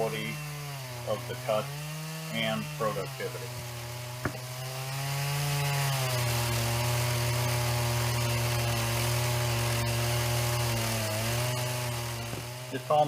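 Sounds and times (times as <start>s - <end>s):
chainsaw cutting log: 0.0s - 13.0s.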